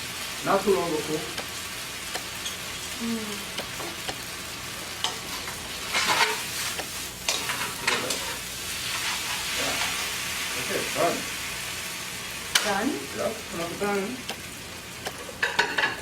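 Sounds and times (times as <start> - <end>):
noodles sizzling in a pan: 0.0 - 16.0
utensil scraping a pan: 5.1 - 10.1.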